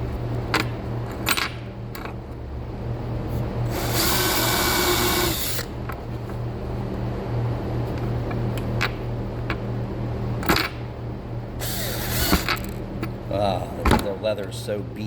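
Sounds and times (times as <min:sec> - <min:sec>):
power drill boring leather: 0:03.7 - 0:05.7, 0:11.6 - 0:12.5.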